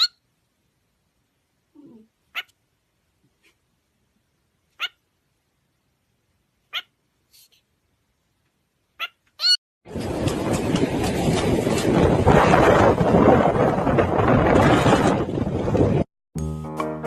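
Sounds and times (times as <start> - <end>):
small pet high-pitched squeaks: 0.0 - 0.2, 1.8 - 2.6, 4.8 - 5.0, 6.7 - 7.6, 9.0 - 9.6.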